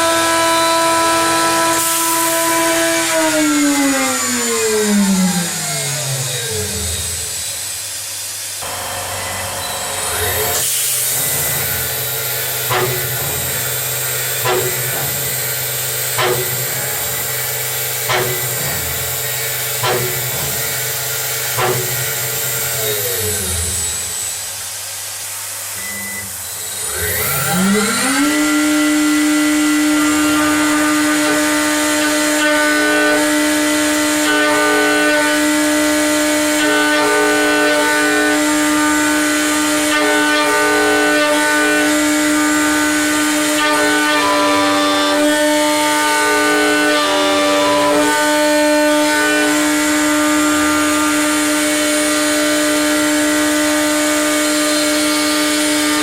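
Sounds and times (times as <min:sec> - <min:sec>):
spindle motor whine: 0:08.6 - 0:34.0.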